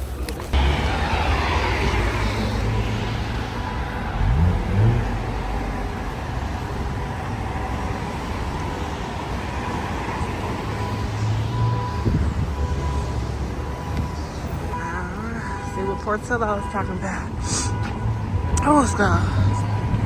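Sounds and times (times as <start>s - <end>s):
rising sweep: 0.5s - 14.8s.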